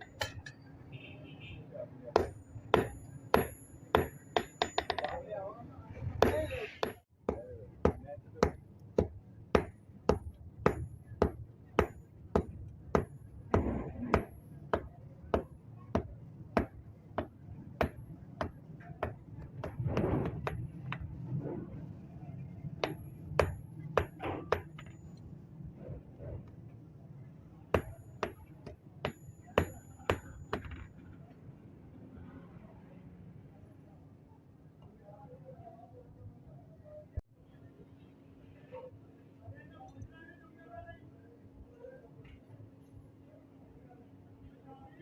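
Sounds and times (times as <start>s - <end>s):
hammer striking iron on anvil: 2.2s - 5.2s, 6.2s - 20.6s, 22.8s - 25.0s, 27.8s - 30.9s.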